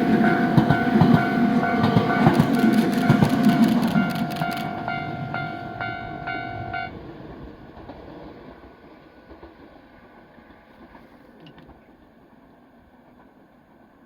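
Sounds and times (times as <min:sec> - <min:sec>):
level crossing warning bell: 0:00.0 - 0:07.0
train rumbling past: 0:00.0 - 0:14.0.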